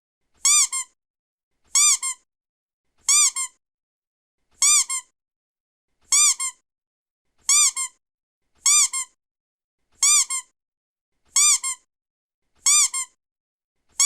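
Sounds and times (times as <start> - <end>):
rubber duck squeaking: 0.4 - 1.0, 1.7 - 2.2, 3.0 - 3.6, 4.6 - 5.1, 6.1 - 6.6, 7.5 - 8.0, 8.6 - 9.2, 10.0 - 10.5, 11.3 - 11.9, 12.6 - 13.2.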